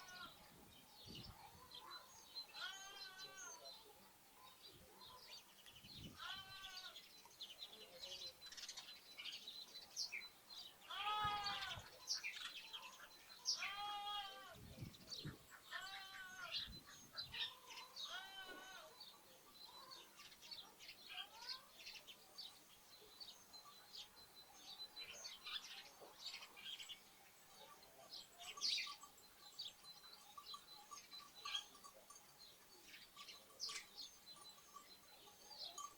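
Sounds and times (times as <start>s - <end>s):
small birds chirping: 0.0s - 35.9s
lamb bleating: 2.6s - 3.6s, 6.2s - 7.0s, 10.9s - 11.9s, 13.6s - 14.6s, 15.7s - 16.6s, 17.5s - 19.0s.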